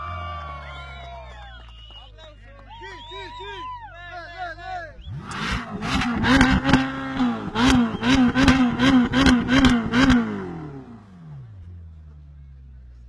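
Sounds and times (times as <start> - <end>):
car engine revving: 4.9 - 13.0
sharp exhaust cracks: 5.0 - 12.3.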